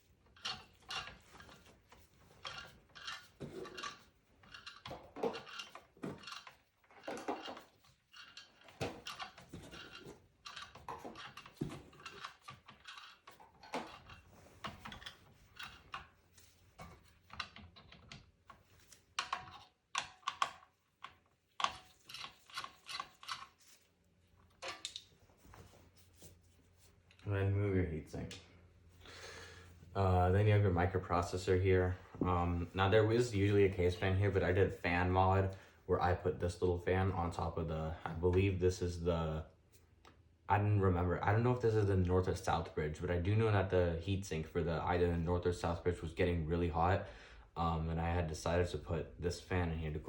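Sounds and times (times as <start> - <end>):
parts rattling inside metal case: 0.0 - 23.9.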